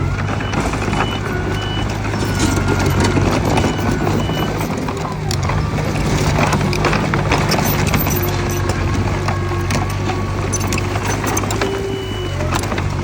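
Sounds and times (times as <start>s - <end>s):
diesel engines running: 0.0s - 13.0s
reversing alarm beeps: 0.4s - 5.1s, 10.5s - 12.8s
metal clanks: 0.4s - 11.8s.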